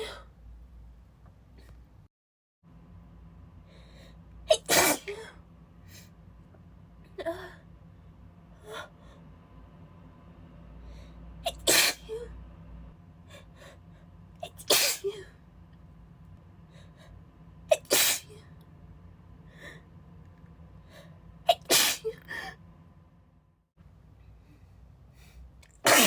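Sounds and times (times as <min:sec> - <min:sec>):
woman sneezing: 0:04.6 - 0:05.4, 0:11.5 - 0:12.3, 0:14.5 - 0:15.4, 0:17.8 - 0:18.4, 0:21.5 - 0:22.5.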